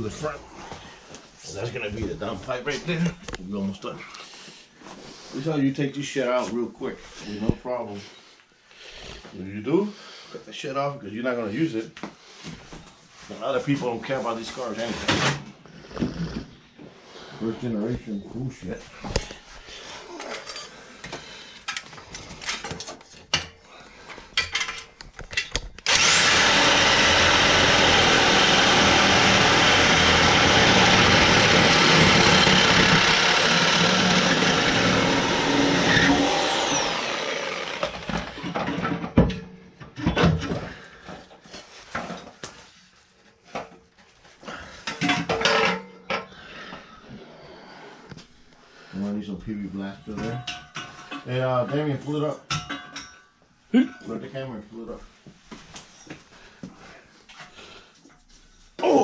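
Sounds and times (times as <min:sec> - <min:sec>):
power tool grinding metal pipe: 0:25.9 - 0:38.6.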